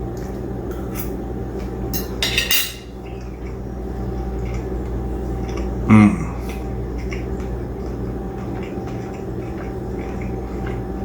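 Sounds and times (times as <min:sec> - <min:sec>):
steady low hum: 0:00.0 - 0:11.0
plate and utensils clinking: 0:02.0 - 0:03.0.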